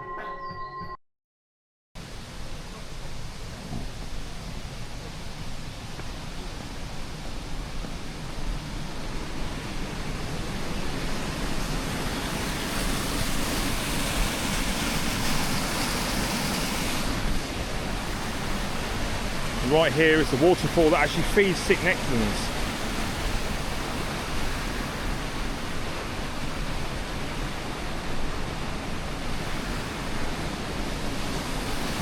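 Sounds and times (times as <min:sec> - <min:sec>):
small waterfall rushing: 0:02.0 - 0:32.0.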